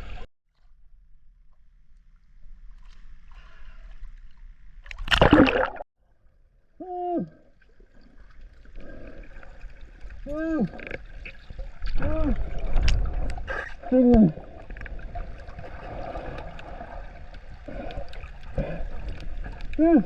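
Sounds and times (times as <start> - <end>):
underwater rush of water: 4.9 - 5.8, 7.7 - 20.0.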